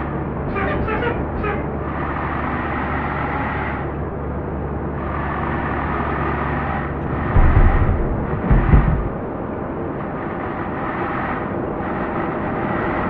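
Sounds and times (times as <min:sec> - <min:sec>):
road noise: 0:00.0 - 0:13.0
vehicle engine hum: 0:00.0 - 0:13.0
loud low rumble: 0:06.8 - 0:10.3.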